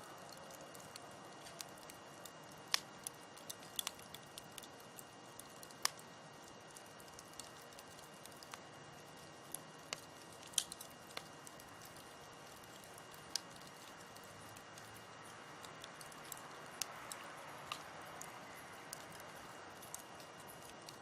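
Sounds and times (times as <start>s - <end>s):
campfire hissing: 0.0s - 21.0s
wood crackling and popping: 0.0s - 21.0s.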